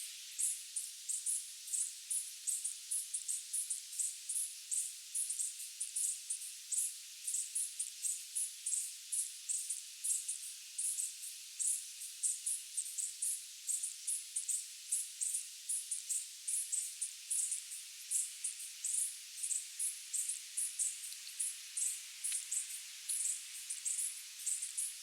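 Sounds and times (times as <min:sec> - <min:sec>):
night insects chirping: 0:16.5 - 0:25.0.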